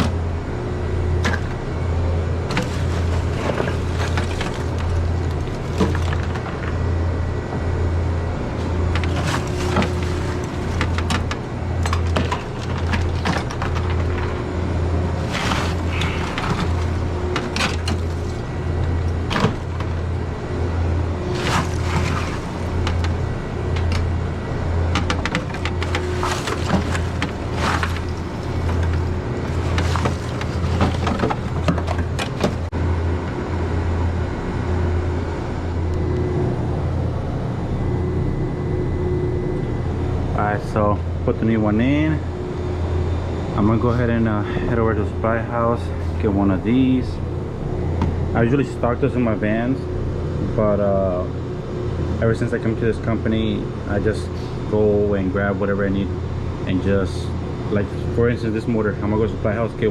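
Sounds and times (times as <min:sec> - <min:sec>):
steady low hum: 0:00.0 - 0:59.9
handling knocks and rattles: 0:02.4 - 0:06.9, 0:08.6 - 0:24.1, 0:24.8 - 0:32.8
ice cracking and clacking: 0:02.5 - 0:06.8, 0:09.0 - 0:14.4, 0:15.2 - 0:20.0, 0:21.3 - 0:23.2, 0:25.0 - 0:32.7.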